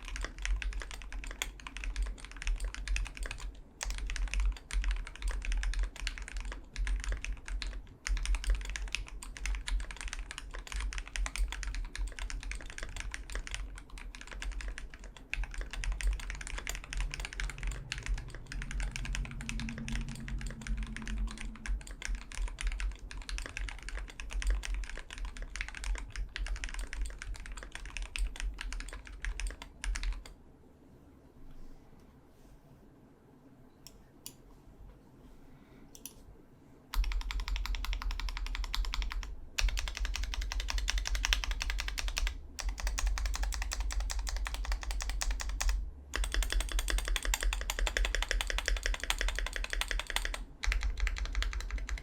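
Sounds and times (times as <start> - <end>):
fast keyboard typing: 0.0 - 30.4, 36.9 - 52.0.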